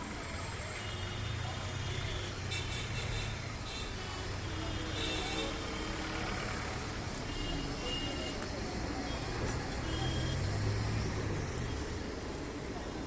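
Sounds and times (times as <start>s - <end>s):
low traffic rumble: 0.0s - 13.0s.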